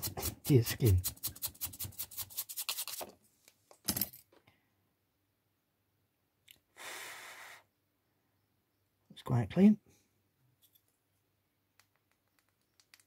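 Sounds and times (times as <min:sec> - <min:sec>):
bristle brush scrubbing: 0:00.0 - 0:03.1.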